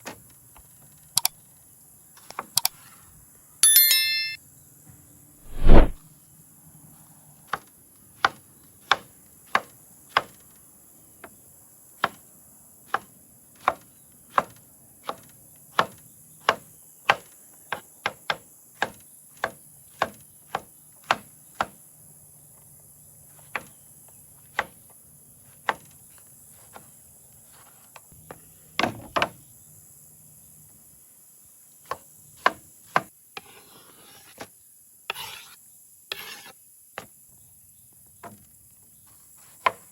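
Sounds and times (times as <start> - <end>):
chopping strikes: 5.5 - 6.0.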